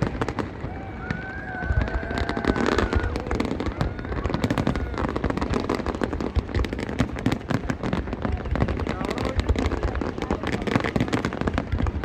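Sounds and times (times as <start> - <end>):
deep firework booms: 0.0 - 12.0
fireworks crackling and popping: 0.0 - 12.0.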